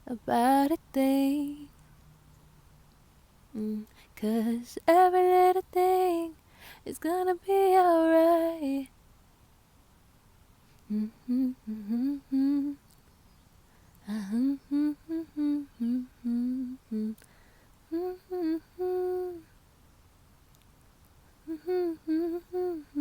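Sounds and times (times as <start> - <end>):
woman humming: 10.8 - 12.8, 14.0 - 17.3, 17.9 - 19.5, 21.4 - 23.0.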